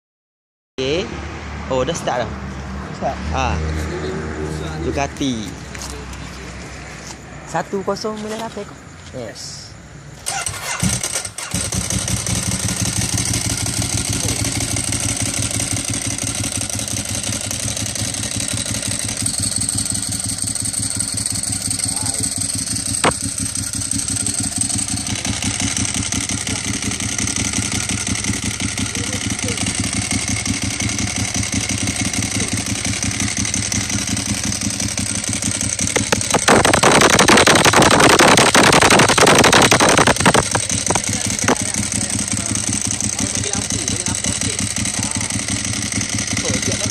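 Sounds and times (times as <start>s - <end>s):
motorcycle engine idling: 10.3s - 46.9s.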